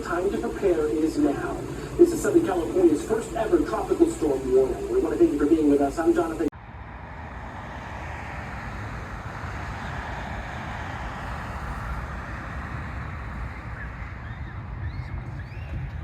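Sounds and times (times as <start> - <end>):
outdoor rushing noise: 0.0 - 16.0
wind on microphone: 6.8 - 16.0.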